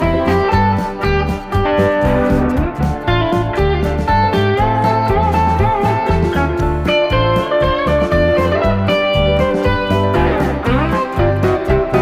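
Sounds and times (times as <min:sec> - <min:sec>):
guitar-led instrumental music: 0:00.0 - 0:12.0.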